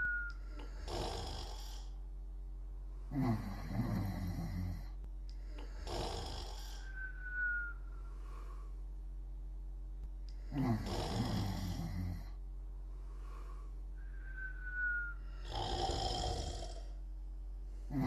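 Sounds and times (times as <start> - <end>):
breathy whistling exhales: 0.0 - 1.9, 5.9 - 8.7, 13.2 - 16.9
low steady hum: 0.0 - 18.0
person snoring: 0.4 - 2.0, 3.1 - 7.0, 10.3 - 12.4, 15.1 - 17.0.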